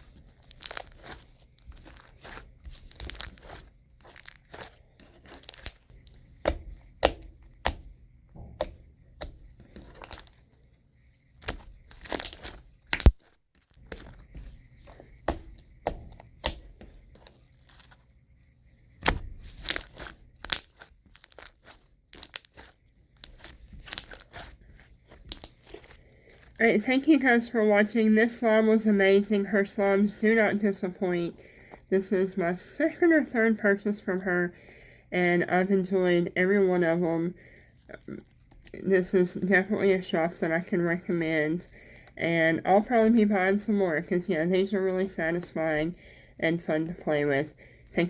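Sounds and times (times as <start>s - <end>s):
slime clicking and popping: 0.4s - 5.8s, 6.4s - 7.9s, 11.4s - 14.3s, 15.2s - 17.9s, 19.0s - 26.5s.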